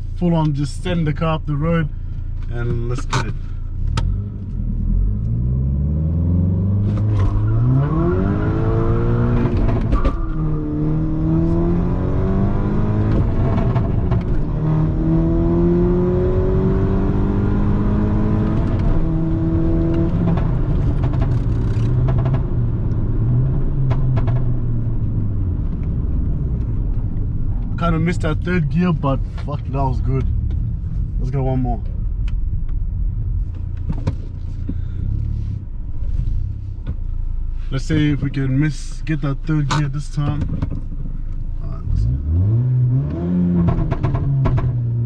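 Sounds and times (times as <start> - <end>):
car engine accelerating hard: 3.8 - 32.4, 39.0 - 45.0.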